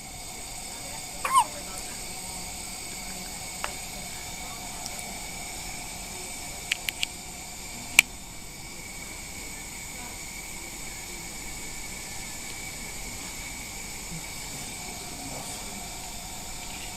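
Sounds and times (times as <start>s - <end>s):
faint steady tones: 0.0s - 16.9s
steady equipment hiss: 0.0s - 16.9s.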